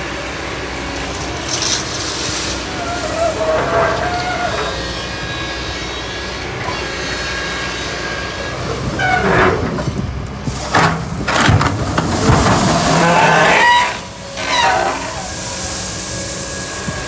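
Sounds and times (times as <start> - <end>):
excavator diesel engine running: 0.0 - 17.0
irregular knocks and scraping: 8.7 - 15.2.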